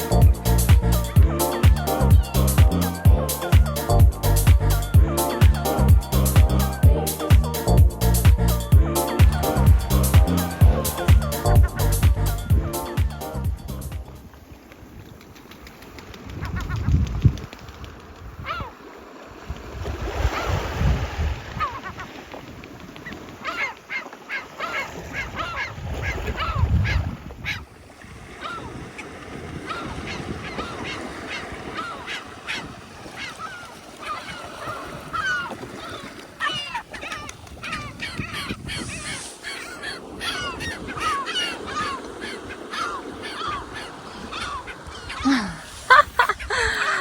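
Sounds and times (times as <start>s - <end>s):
low rumbling bursts: 0.0s - 14.3s
flock of birds calling: 29.6s - 47.0s.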